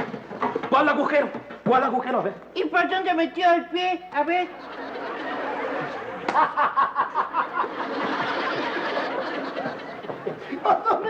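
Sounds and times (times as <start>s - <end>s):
audience laughing: 4.5s - 11.0s.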